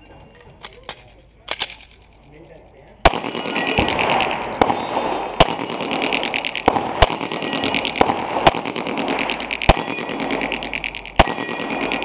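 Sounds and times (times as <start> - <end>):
steady background noise: 0.0 - 12.0
pistol shots: 3.0 - 12.0.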